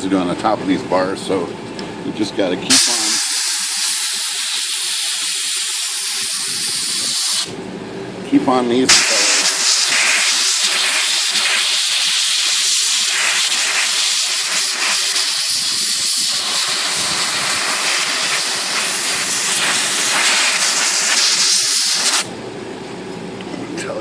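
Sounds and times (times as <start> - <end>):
compressed air hissing: 2.7 - 7.6, 8.9 - 22.3.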